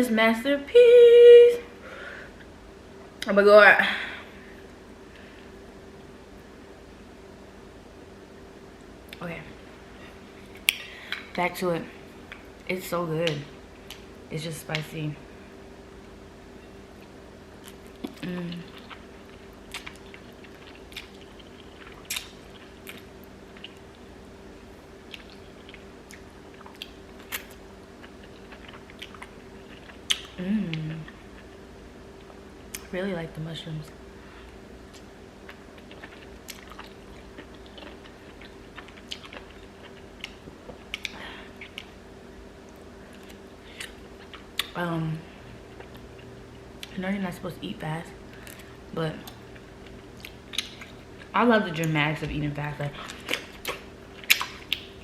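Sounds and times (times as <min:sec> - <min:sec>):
faint steady hum: 0:00.0 - 0:55.0
wet chewing clicks and smacks: 0:17.6 - 0:24.0, 0:25.1 - 0:30.4, 0:34.9 - 0:42.0, 0:49.2 - 0:51.3, 0:53.1 - 0:55.0
person humming: 0:18.2 - 0:18.7, 0:30.4 - 0:31.1
wet mouth smacking: 0:53.4 - 0:54.9.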